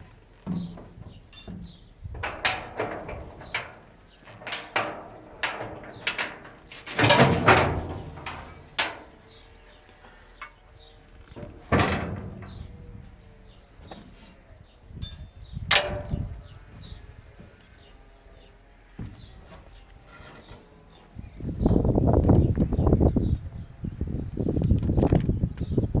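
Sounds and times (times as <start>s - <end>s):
knocks and clattering of tools: 0.4s - 9.4s, 15.0s - 16.3s.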